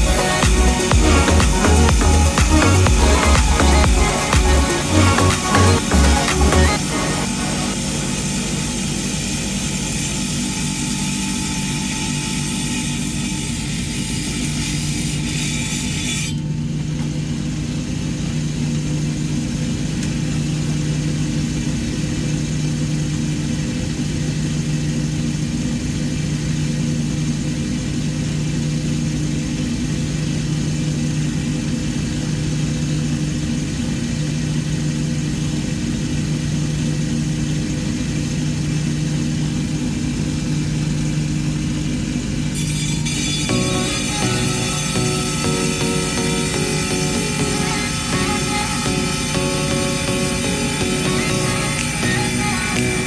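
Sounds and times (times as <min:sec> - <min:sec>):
rock saw motor hum: 0:00.0 - 0:16.6, 0:36.8 - 0:53.0.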